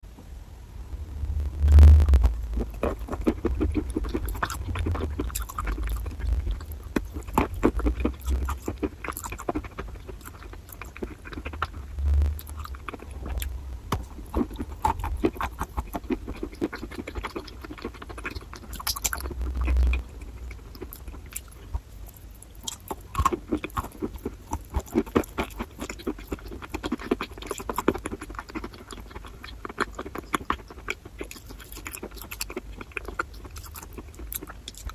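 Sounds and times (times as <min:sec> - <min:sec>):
low thumps: 0:00.2 - 0:08.5, 0:11.8 - 0:15.8
chalk being chewed: 0:12.4 - 0:34.9.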